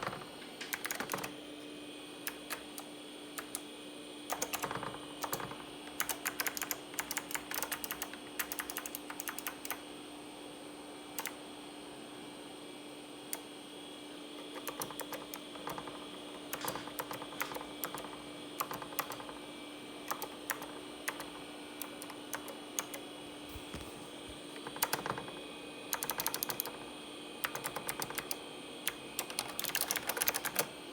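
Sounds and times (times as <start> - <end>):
clicky mechanical keyboard typing: 0.0 - 1.4, 2.2 - 3.6, 4.3 - 9.8, 11.2 - 11.4, 14.4 - 19.4, 20.0 - 23.8, 24.6 - 26.8, 27.4 - 30.7.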